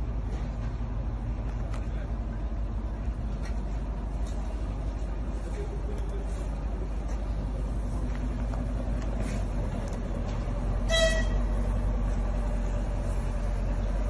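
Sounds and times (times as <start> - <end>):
traffic rumble: 0.0 - 14.0
short horn toot: 10.8 - 11.6.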